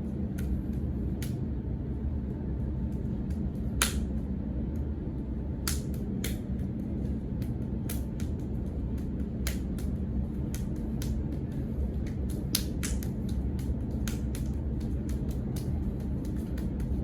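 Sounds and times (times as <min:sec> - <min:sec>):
steady low rumble: 0:00.0 - 0:17.0
hands slapping and striking: 0:03.3 - 0:04.2, 0:05.6 - 0:17.0.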